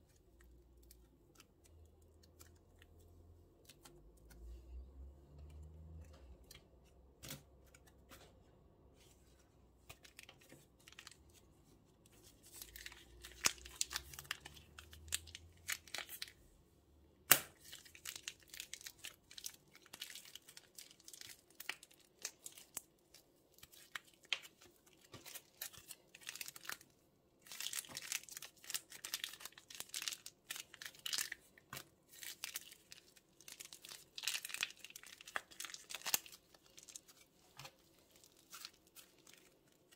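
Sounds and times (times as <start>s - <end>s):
plastic bags crinkling and tearing: 12.4s - 16.3s, 17.6s - 39.9s.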